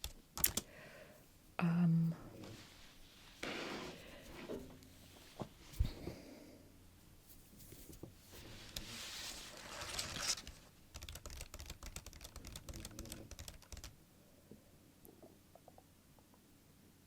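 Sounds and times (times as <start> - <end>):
soft hiss: 0.6 - 10.9.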